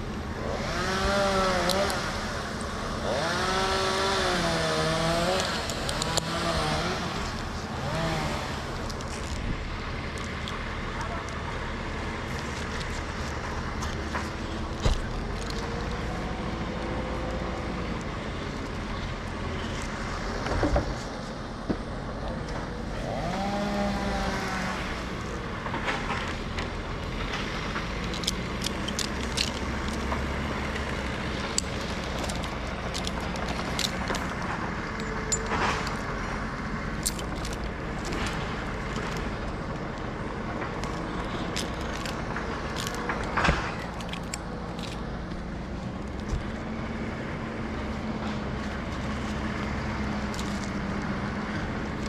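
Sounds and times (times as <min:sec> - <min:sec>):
engine running low: 0:00.0 - 0:52.0
sharp clicks and knocks: 0:04.9 - 0:11.4, 0:12.2 - 0:21.9, 0:25.6 - 0:46.6, 0:48.2 - 0:52.0.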